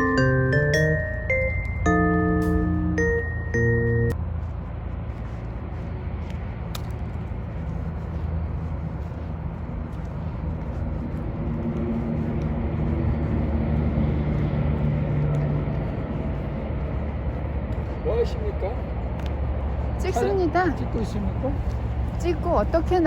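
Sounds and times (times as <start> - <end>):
chiming mallet jingle: 0.0 - 4.2
low engine hum: 0.0 - 23.0
traffic rumble: 0.0 - 23.0.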